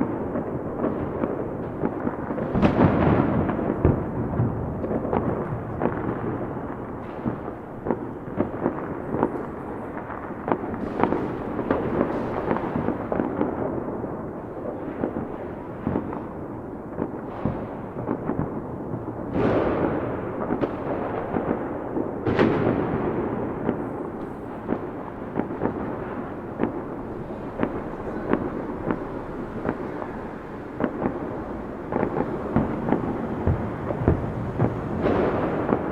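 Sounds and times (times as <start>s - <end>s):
fireworks bangs: 0.0s - 35.9s
fireworks booms: 0.0s - 35.9s
fireworks rumble: 0.0s - 35.9s.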